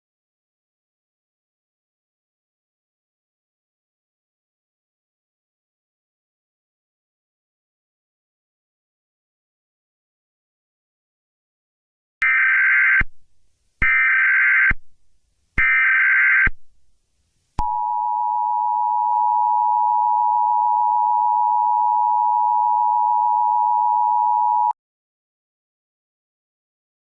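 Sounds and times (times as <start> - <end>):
steady dual tone attention signal: 17.6 - 24.8.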